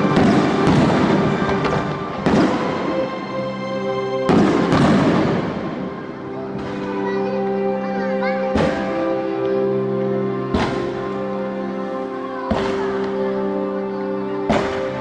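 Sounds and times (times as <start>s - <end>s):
fireworks bangs and crackle: 0.0s - 3.2s, 4.2s - 6.9s, 8.5s - 9.0s, 10.5s - 11.0s, 12.5s - 13.2s, 14.5s - 15.0s
music with sustained tones: 0.0s - 15.0s.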